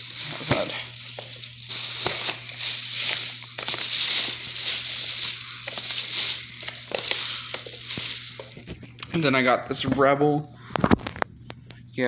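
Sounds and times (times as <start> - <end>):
packaging rustling and crinkling: 0.0 - 9.1.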